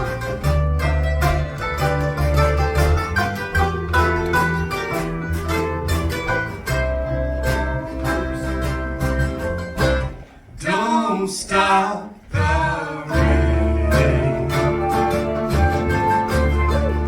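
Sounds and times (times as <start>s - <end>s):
live band playing guitar and bass: 0.0s - 10.5s, 13.1s - 17.0s
person singing: 10.6s - 16.0s.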